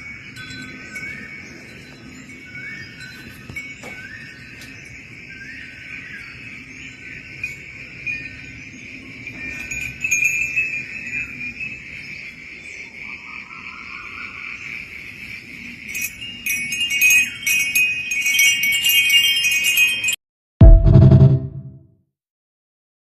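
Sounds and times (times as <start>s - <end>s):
metal wind chimes ringing: 0.0s - 12.1s, 15.8s - 20.2s.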